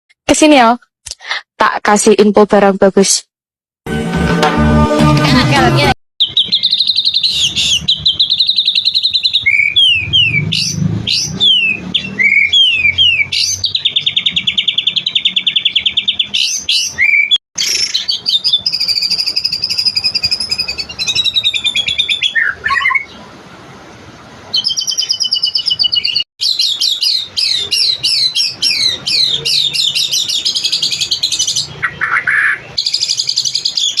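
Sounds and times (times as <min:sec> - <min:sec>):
songbird singing trills and whistles: 0:06.2 - 0:23.2, 0:24.5 - 0:34.0.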